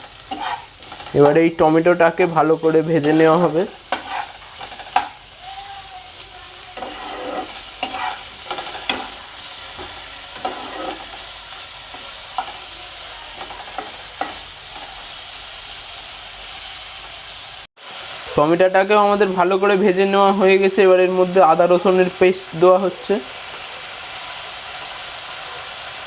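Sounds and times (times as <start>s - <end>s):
spatula scraping a pan: 0.0s - 5.2s, 6.6s - 12.7s, 13.4s - 15.0s
vegetables sizzling in oil: 0.0s - 26.0s.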